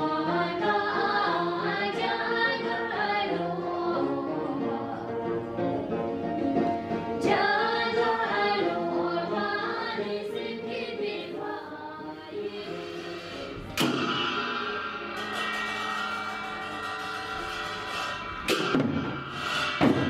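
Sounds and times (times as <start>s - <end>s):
choir singing: 0.0s - 15.7s.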